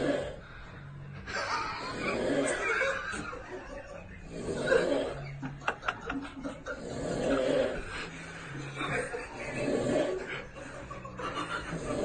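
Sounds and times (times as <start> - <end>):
man snoring: 0.0 - 0.5, 1.6 - 3.2, 4.2 - 5.6, 6.5 - 12.0
stifled laughter and snickering: 1.1 - 12.0.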